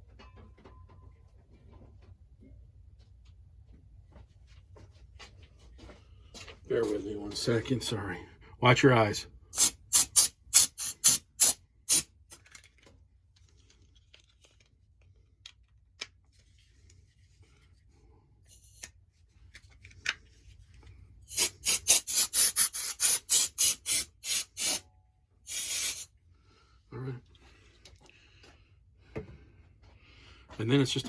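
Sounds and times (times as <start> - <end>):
quick rubbing strokes: 21.3 - 24.8.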